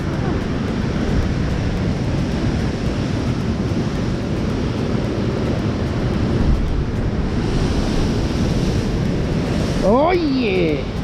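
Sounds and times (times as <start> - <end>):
sea surf breaking on rocks: 0.0 - 11.0
wind buffeting microphone: 0.0 - 11.0.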